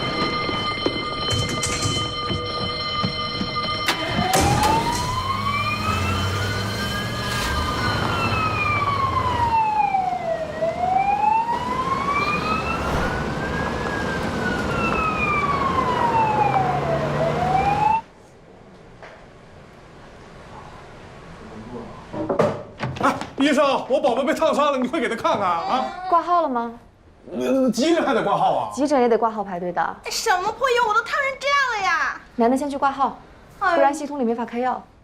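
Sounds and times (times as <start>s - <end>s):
emergency siren wailing: 0.0s - 18.1s
low vehicle rumble: 11.2s - 17.6s.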